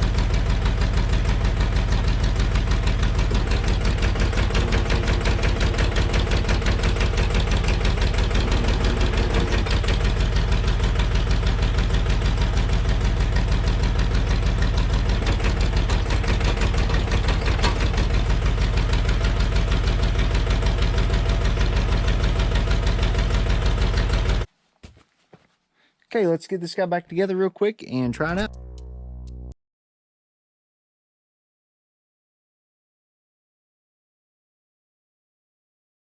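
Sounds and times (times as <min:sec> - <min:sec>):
backhoe engine idling: 0:00.0 - 0:24.5.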